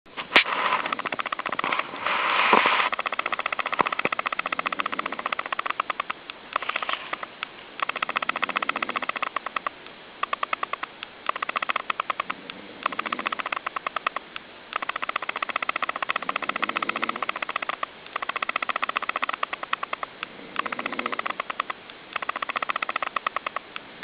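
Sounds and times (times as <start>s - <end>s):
snoring-like animal call: 4.1s - 5.9s, 7.9s - 9.5s, 12.1s - 13.6s, 16.0s - 17.7s, 20.3s - 21.6s.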